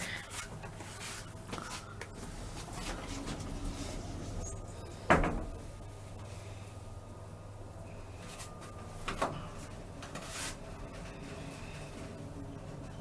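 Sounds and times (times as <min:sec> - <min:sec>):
elevator hum: 0:00.0 - 0:13.0.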